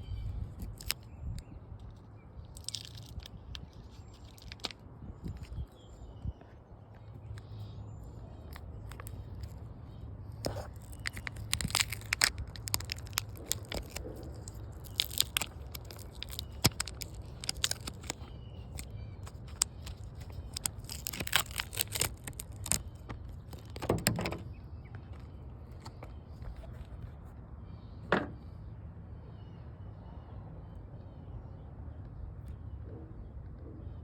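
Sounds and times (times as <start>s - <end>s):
plastic crackling and tearing: 0.3s - 6.2s, 8.3s - 27.2s.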